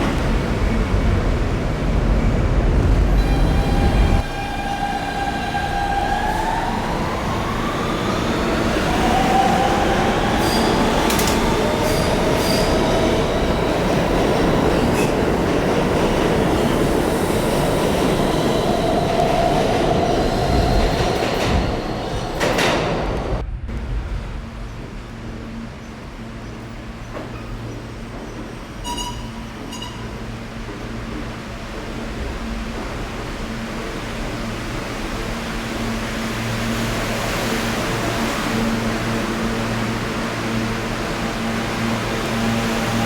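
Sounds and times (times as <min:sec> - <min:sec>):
train wheels rumbling on track: 0:00.0 - 0:43.0
rail joint clicks: 0:10.4 - 0:12.8
heavy low rumble: 0:20.3 - 0:26.7.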